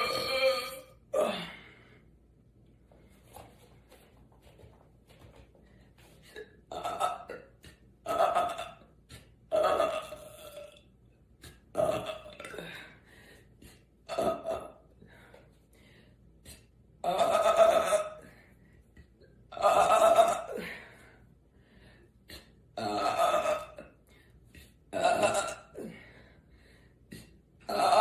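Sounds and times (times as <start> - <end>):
woman belching loudly: 0.0 - 1.3, 6.7 - 7.4, 8.0 - 8.8, 9.5 - 10.8, 11.8 - 12.6, 17.0 - 18.2, 22.8 - 23.8, 24.9 - 25.8, 27.7 - 28.0.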